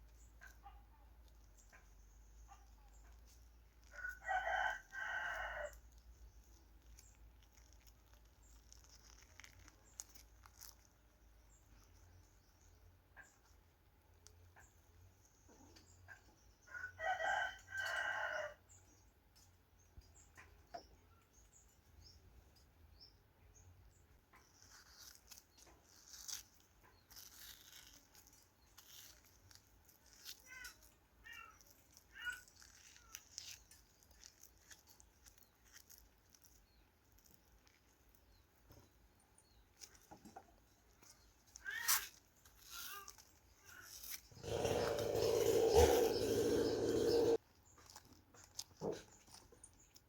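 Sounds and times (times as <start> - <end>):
rooster crowing: 4.0 - 5.8, 17.0 - 18.6, 44.4 - 47.4.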